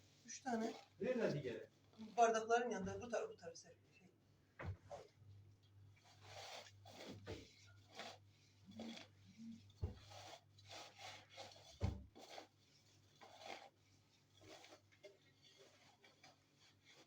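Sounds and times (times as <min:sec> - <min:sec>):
soft thumps: 0:04.6 - 0:05.1
hands rubbing and scraping: 0:06.0 - 0:17.0.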